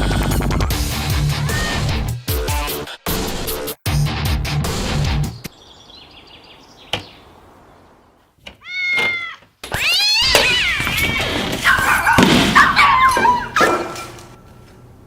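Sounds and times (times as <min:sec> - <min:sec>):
cat meowing: 0:08.6 - 0:12.1.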